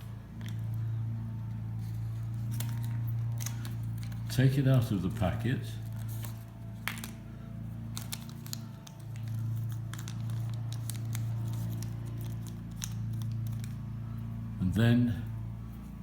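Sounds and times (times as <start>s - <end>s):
steady low hum: 0.0s - 16.0s
pouch crinkling: 7.9s - 13.8s.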